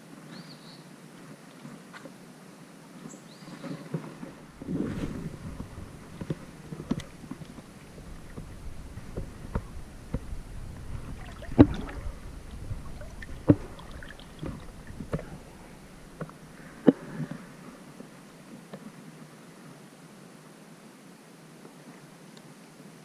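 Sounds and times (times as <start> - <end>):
low rumble: 4.4 - 17.9
sloshing steps in water: 10.8 - 16.5.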